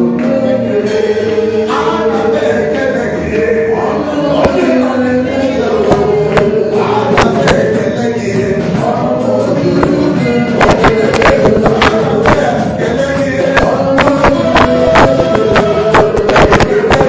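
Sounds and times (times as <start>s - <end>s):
choir singing: 0.0s - 17.0s
sharp percussion beat: 0.0s - 17.0s.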